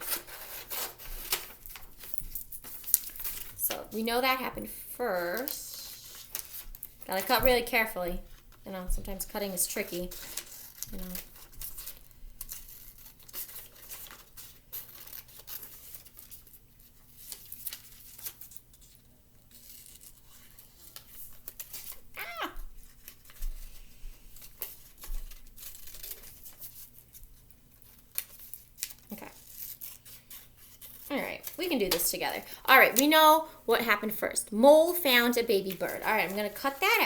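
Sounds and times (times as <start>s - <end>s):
paper rustling: 0.0s - 4.4s, 5.1s - 37.0s
scissors snipping paper: 5.2s - 7.8s, 9.4s - 16.5s, 24.4s - 26.9s, 27.8s - 33.3s.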